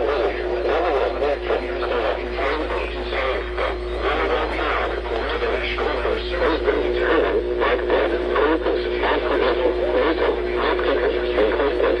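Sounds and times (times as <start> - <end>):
low hum: 0.0 - 12.0
muffled radio broadcast: 0.0 - 12.0.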